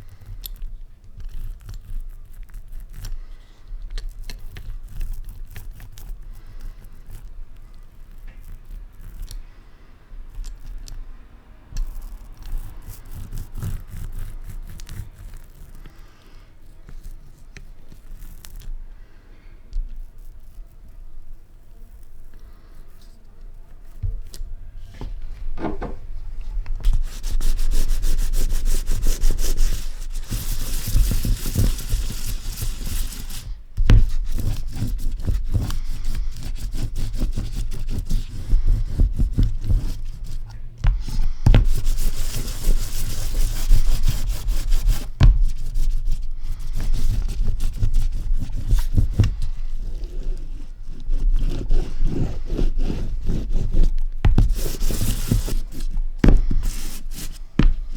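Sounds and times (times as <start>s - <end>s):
hand tool scraping linocut block: 11.8s - 16.1s, 21.8s - 57.9s.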